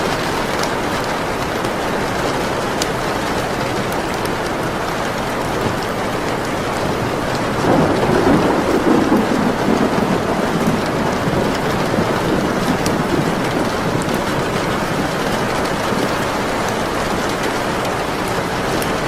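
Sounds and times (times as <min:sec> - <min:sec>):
steady rain: 0:00.0 - 0:19.0
thunder rumble: 0:05.2 - 0:19.0.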